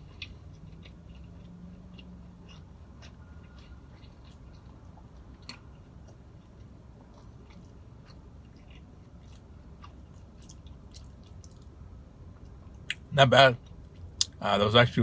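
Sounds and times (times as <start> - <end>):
person chewing: 0.0 - 11.8.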